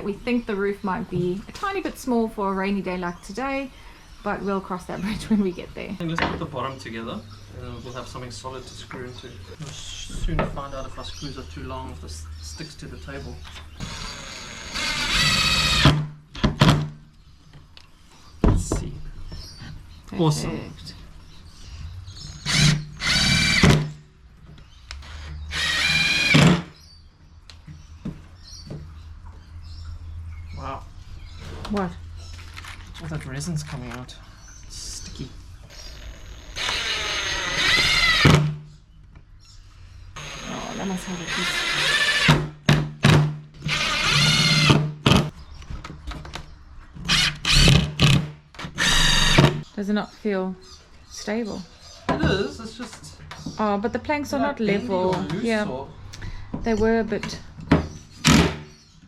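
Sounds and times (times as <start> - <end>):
power drill driving screws: 13.8 - 16.8, 22.3 - 24.0, 25.0 - 26.7, 35.7 - 38.5, 40.2 - 45.3, 47.0 - 49.6.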